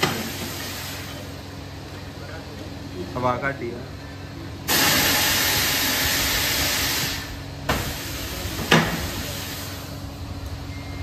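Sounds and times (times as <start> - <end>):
air hissing out of a tyre: 0.0 - 1.3, 4.7 - 10.0.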